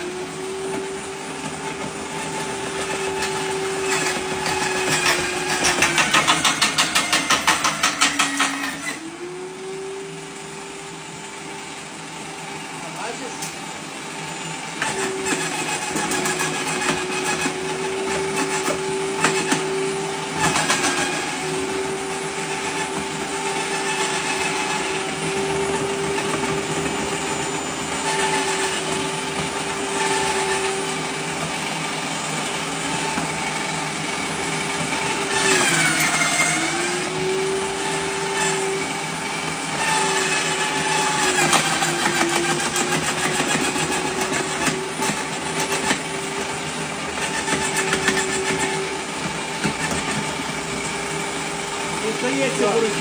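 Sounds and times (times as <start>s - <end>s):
branch shredder running: 0.0s - 53.0s.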